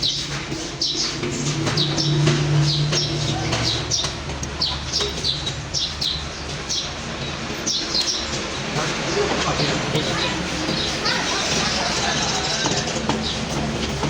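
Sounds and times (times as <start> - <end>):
small birds chirping: 0.0 - 14.0
steady low hum: 0.4 - 11.4.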